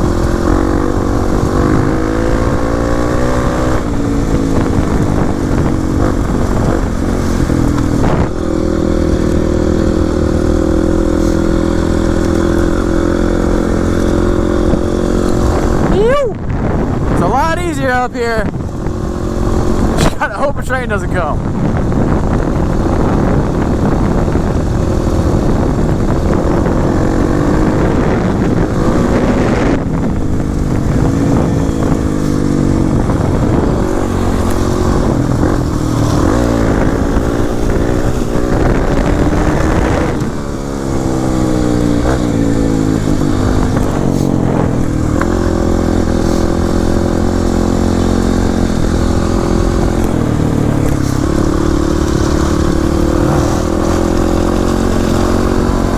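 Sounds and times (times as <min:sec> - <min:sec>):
dirt bike engine revving: 0:00.0 - 0:55.9.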